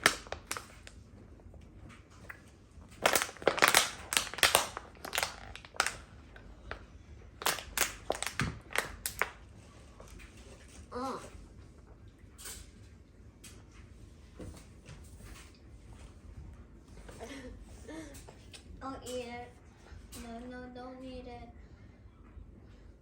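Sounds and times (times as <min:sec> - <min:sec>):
plastic bottle being crushed: 0:00.0 - 0:00.9, 0:03.0 - 0:06.8, 0:07.4 - 0:09.4.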